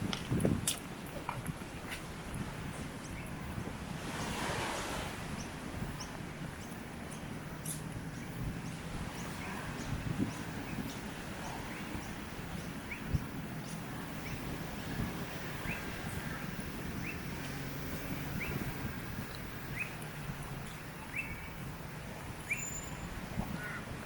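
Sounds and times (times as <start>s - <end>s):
outdoor background hiss: 0.0s - 24.0s
small birds chirping: 5.4s - 17.7s, 18.3s - 21.6s, 22.4s - 23.8s.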